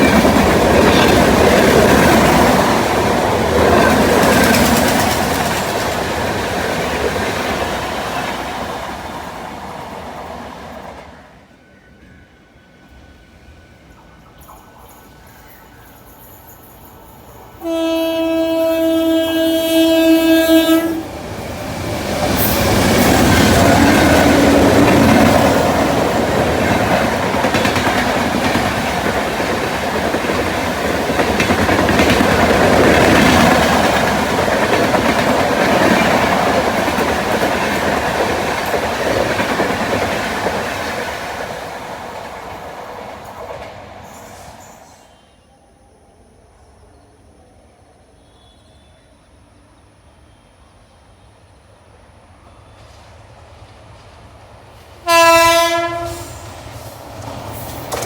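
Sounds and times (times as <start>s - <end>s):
train wheels clattering: 0.0s - 9.2s, 21.1s - 44.8s, 52.8s - 58.0s
locomotive horn: 17.6s - 21.1s, 55.0s - 56.5s.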